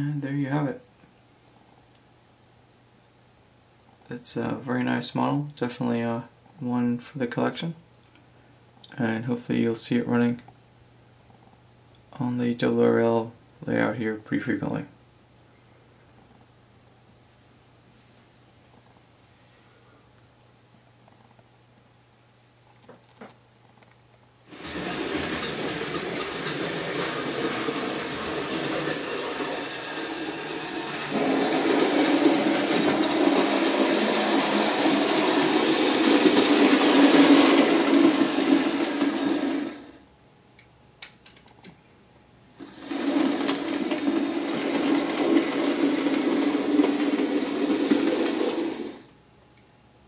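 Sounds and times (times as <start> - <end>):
model train motor whirring: 24.5 - 39.9, 42.6 - 49.0
wheels rattling over rails: 24.5 - 40.0, 42.6 - 49.1.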